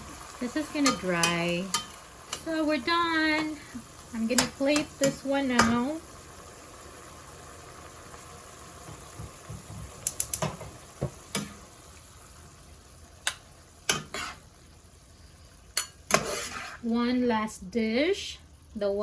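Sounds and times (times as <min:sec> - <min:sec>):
food sizzling in a pan: 0:00.0 - 0:19.0
utensil clinking and scraping pan: 0:00.7 - 0:02.5, 0:15.8 - 0:16.8.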